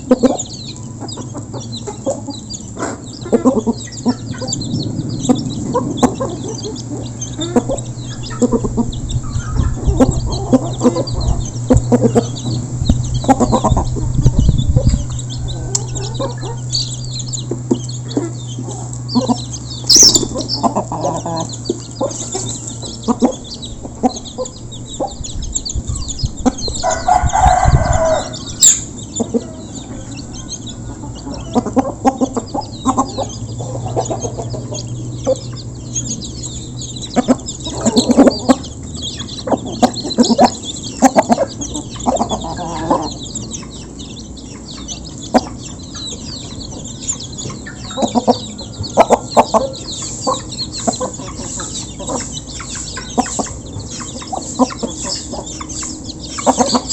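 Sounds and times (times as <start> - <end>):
chickens clucking: 0.0 - 56.9
loud chicken call: 26.7 - 35.4, 39.4 - 43.5.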